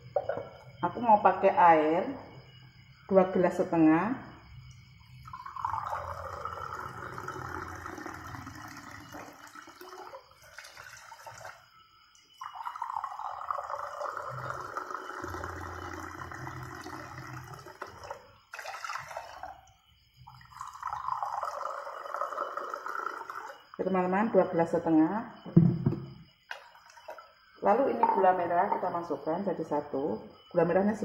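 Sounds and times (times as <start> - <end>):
water pouring into a pot: 5.2 - 23.8, 26.5 - 27.4.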